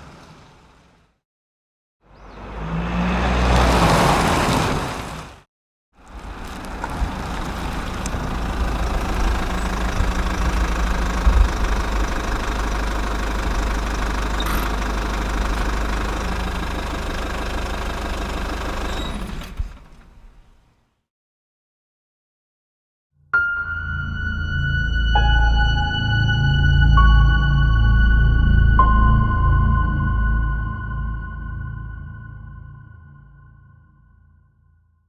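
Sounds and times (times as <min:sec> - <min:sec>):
engine idling: 0:06.6 - 0:20.5.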